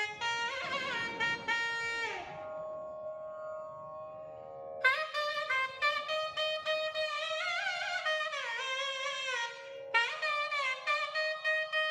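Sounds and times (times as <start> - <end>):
held drone tone: 0.0 - 4.2.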